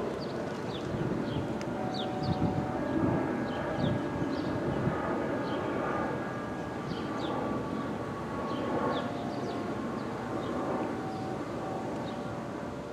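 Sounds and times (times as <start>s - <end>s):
warning siren alert tone: 1.7s - 3.1s.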